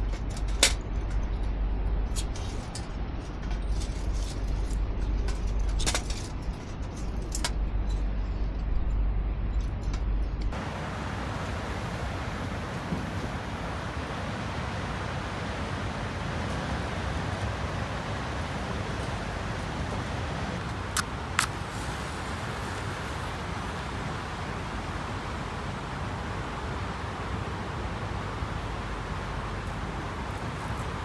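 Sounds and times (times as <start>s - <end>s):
steady outdoor rushing noise: 0.0s - 31.0s.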